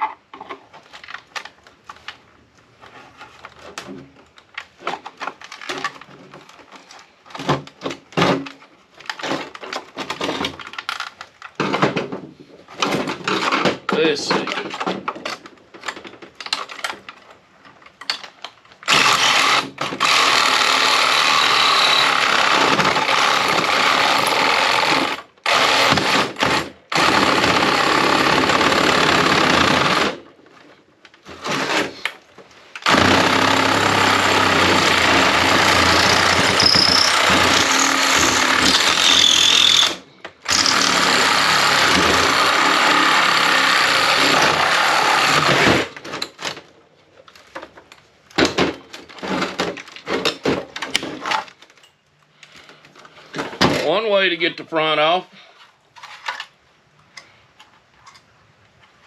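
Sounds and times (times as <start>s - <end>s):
power tool cutting casing: 18.9s - 30.2s, 32.8s - 46.0s.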